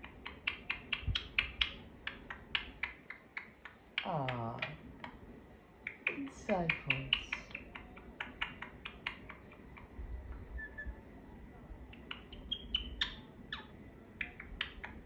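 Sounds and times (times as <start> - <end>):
parrot making sharp clicks: 0.0 - 5.2, 5.9 - 9.9, 11.9 - 15.0
parrot soft chirps: 5.9 - 11.0, 11.9 - 15.0.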